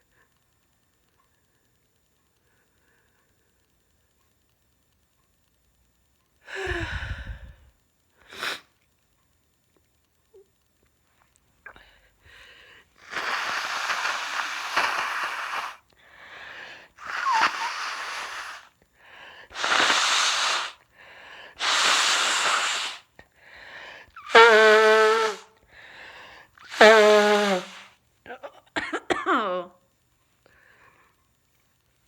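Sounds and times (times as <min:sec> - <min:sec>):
person blowing nose: 0:08.3 - 0:08.6, 0:13.0 - 0:15.8, 0:17.0 - 0:18.7, 0:19.5 - 0:20.8, 0:21.6 - 0:23.2, 0:24.2 - 0:25.5, 0:26.6 - 0:27.9.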